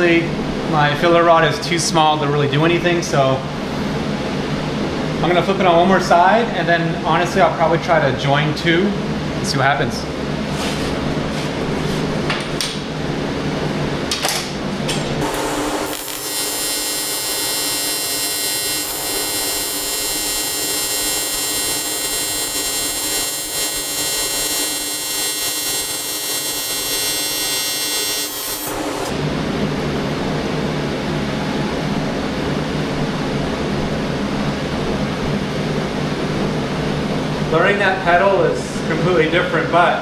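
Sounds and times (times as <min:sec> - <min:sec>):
welding arc buzzing hiss: 0:15.2 - 0:29.2.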